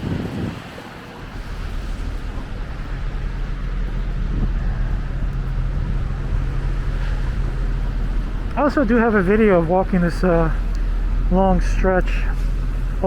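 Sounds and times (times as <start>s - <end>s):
wind on microphone: 0.0s - 9.0s
traffic rumble: 0.0s - 13.0s.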